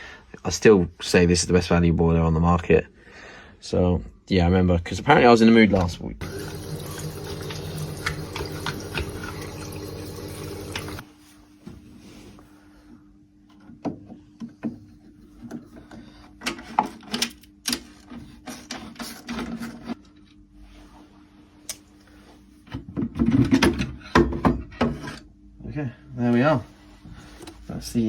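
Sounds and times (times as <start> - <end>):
boiler rushing hum: 6.2 - 11.1.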